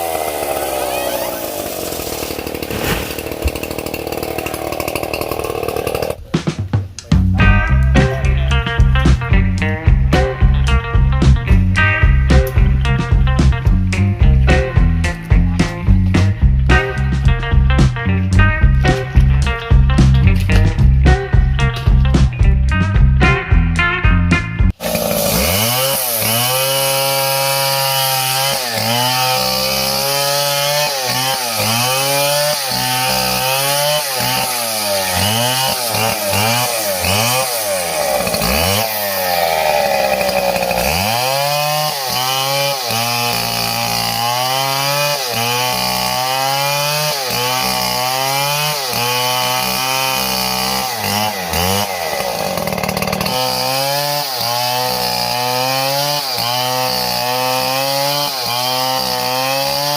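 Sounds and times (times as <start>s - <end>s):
chainsaw cutting wood: 0.0s - 6.3s, 24.7s - 59.9s.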